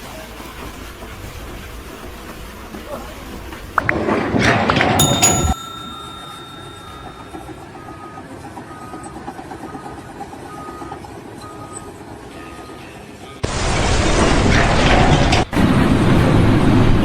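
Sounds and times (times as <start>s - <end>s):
high beep: 5.0s - 7.6s.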